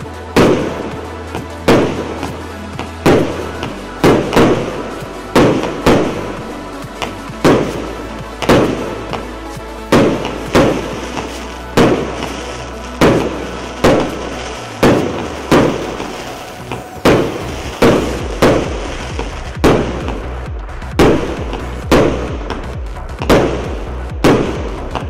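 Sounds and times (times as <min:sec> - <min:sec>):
fireworks bangs with echo: 0:00.0 - 0:09.3, 0:09.9 - 0:25.0.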